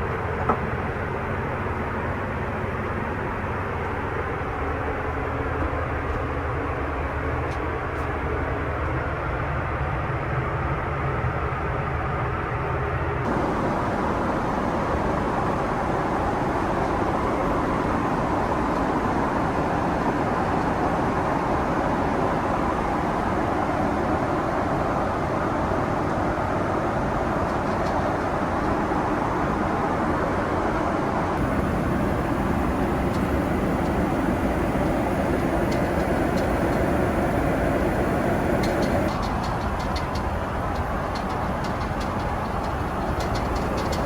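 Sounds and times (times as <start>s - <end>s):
airliner cabin noise: 12.9s - 44.0s.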